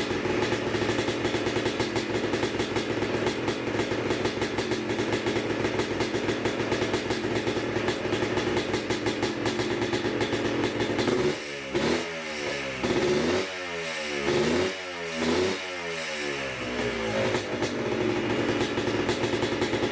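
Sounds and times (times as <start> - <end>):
two-stroke engine idling and revving: 0.0 - 19.9.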